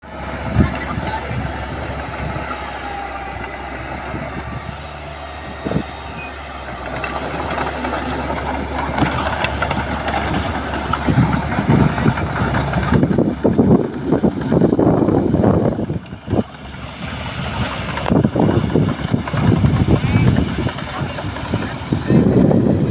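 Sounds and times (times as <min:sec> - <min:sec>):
bulldozer diesel engine droning: 0:00.0 - 0:22.9.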